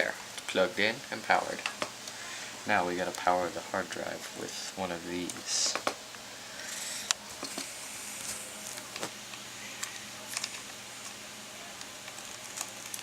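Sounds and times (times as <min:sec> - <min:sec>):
plastic cables clicking and rustling: 0:09.8 - 0:11.2, 0:11.8 - 0:13.0.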